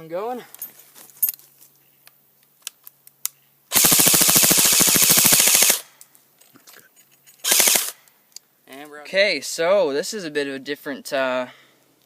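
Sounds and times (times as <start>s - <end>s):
airsoft rifle full-auto burst: 3.7s - 5.9s, 7.4s - 8.0s.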